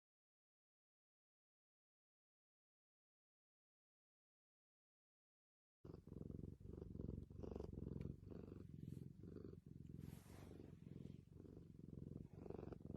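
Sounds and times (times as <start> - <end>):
cat purring: 5.9 - 12.9.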